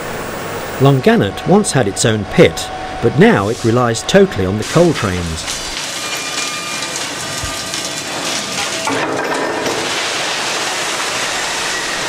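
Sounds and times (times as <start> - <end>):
coal wagons rushing and crackling: 0.8 - 12.0.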